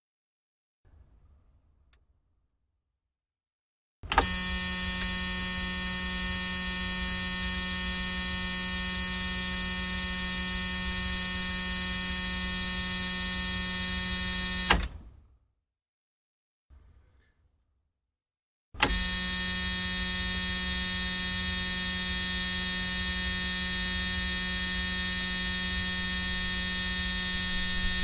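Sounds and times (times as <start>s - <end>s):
electronic alarm buzz: 4.1s - 14.8s, 18.8s - 28.0s.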